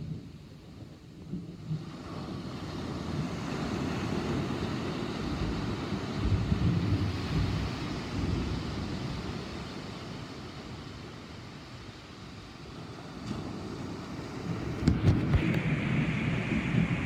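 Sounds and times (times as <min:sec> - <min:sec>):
low rumble of thunder: 0:00.0 - 0:11.5, 0:12.6 - 0:17.0.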